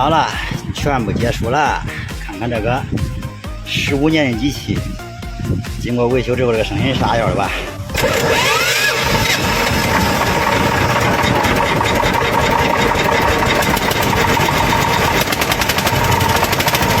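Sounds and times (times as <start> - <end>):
diesel engine running: 7.0 - 17.0.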